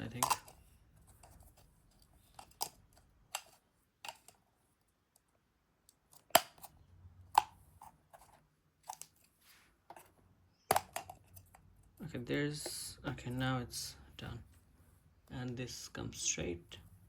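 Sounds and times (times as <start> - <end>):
plastic parts clicking and knocking: 0.0 - 4.4, 5.9 - 9.2, 9.9 - 12.0.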